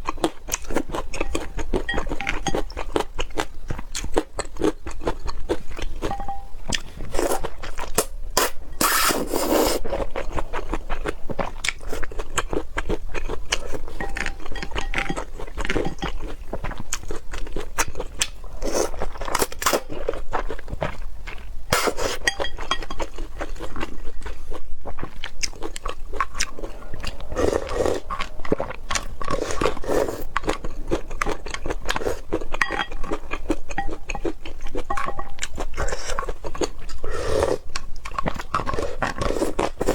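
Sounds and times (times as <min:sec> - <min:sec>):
person chewing and crunching food: 0:00.0 - 0:39.9.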